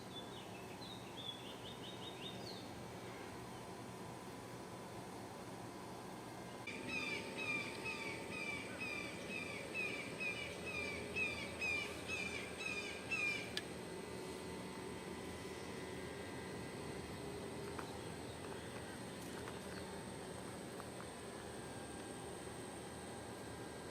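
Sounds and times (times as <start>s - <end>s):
outdoor background noise: 0.0s - 23.9s
animal chirping high-pitched: 6.7s - 13.5s.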